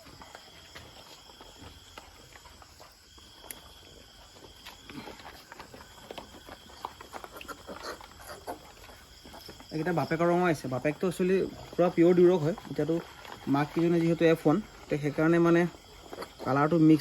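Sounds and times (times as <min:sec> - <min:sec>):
faint insect trill: 0:00.0 - 0:17.0
short animal noises: 0:04.6 - 0:10.1.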